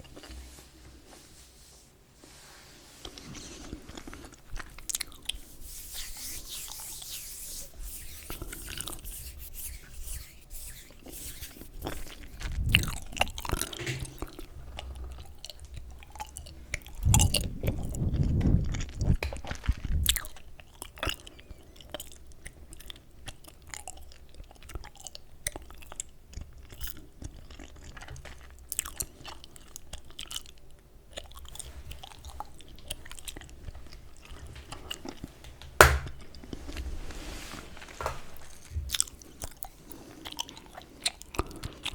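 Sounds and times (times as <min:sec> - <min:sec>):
gum chewing wet clicks: 0:11.8 - 0:34.0.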